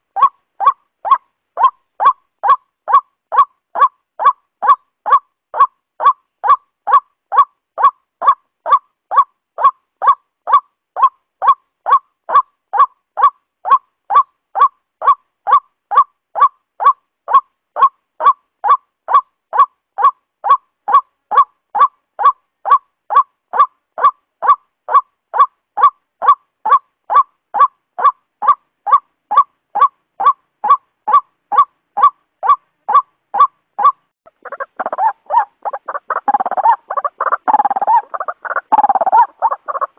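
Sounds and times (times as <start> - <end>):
waterhen calling: 0.0 - 39.9.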